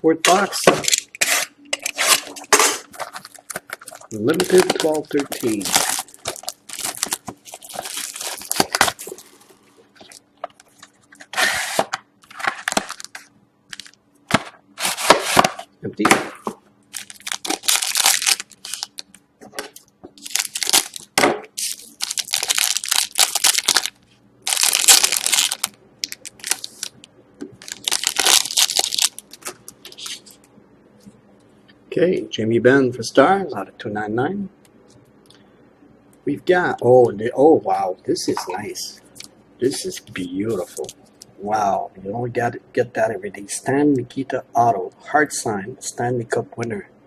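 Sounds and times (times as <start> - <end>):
wrapper crinkling: 1.9 - 11.0, 12.2 - 14.0, 16.9 - 30.4
packs tearing open: 3.0 - 9.4, 11.7 - 14.0, 16.9 - 19.2, 20.2 - 27.0, 27.6 - 30.4.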